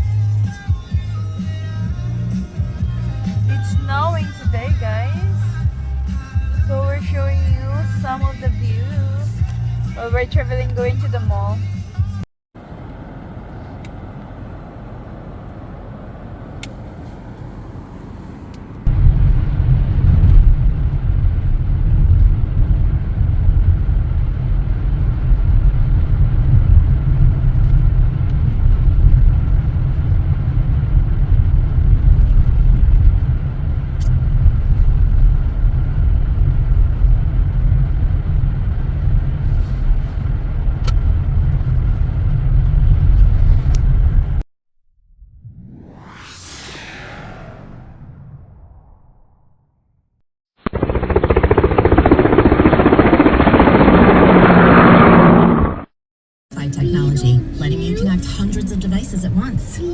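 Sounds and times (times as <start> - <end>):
car road rumble from inside: 0.0 - 44.4, 56.5 - 59.9.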